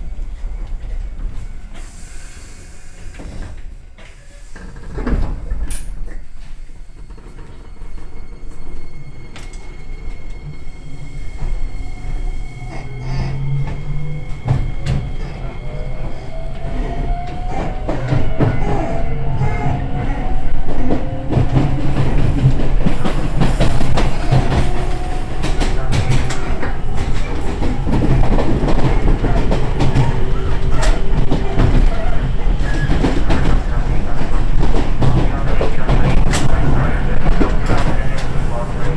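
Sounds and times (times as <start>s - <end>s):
train rumbling on rails: 0.0s - 38.9s
train wheels knocking on rail joints: 20.8s - 38.3s.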